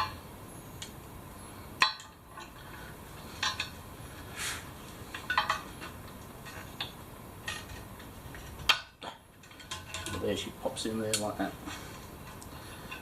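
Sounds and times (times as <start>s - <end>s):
metal tool clinking on wheel rim: 5.1s - 10.5s.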